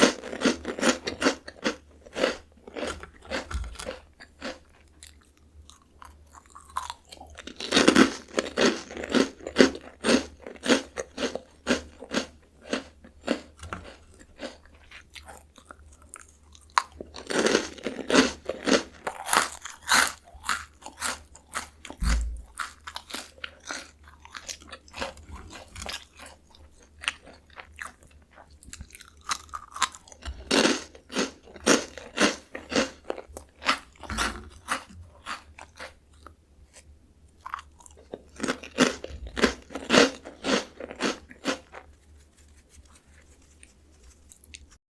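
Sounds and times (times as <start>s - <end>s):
loud cracker crunching: 0.0s - 28.0s, 28.6s - 41.9s
quiet chewing: 8.4s - 42.0s, 42.7s - 44.8s.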